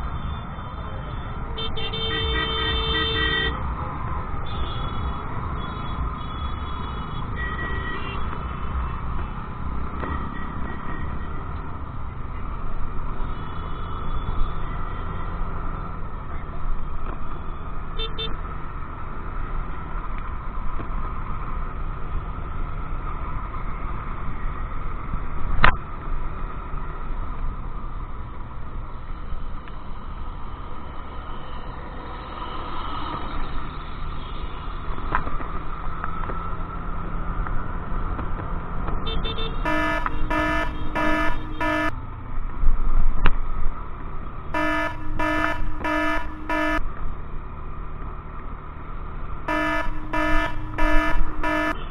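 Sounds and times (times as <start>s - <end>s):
pulsing pitched beep: 39.7s - 41.9s, 44.6s - 46.8s, 49.5s - 51.9s.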